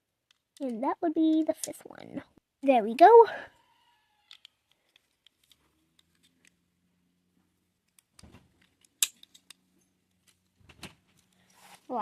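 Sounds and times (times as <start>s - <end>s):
plastic bricks clicking together: 4.2s - 6.6s, 7.9s - 9.6s.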